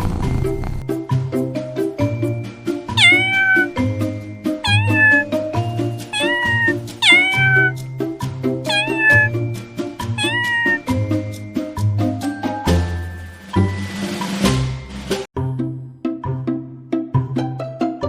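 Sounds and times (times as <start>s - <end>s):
rhythmic background music: 2.6s - 15.2s
cat meowing: 3.0s - 3.8s, 4.6s - 5.4s, 6.1s - 7.8s, 8.7s - 9.4s, 10.1s - 10.9s.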